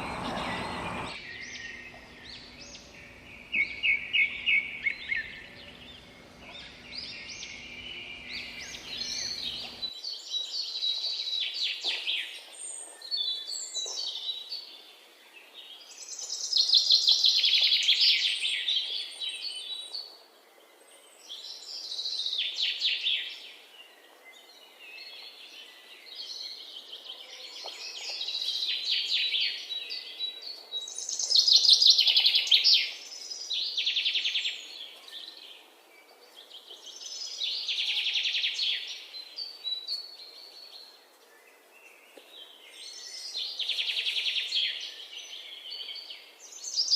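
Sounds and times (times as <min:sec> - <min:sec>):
birds chirping rapid high notes: 0:00.0 - 0:01.2.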